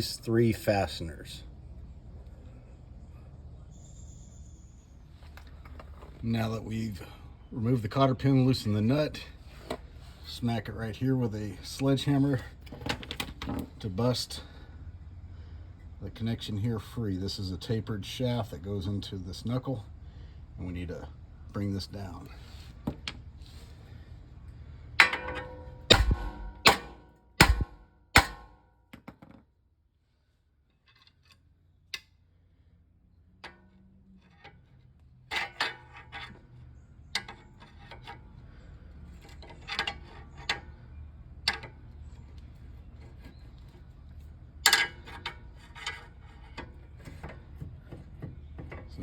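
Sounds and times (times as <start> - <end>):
sledgehammer striking metal: 25.0 - 28.7.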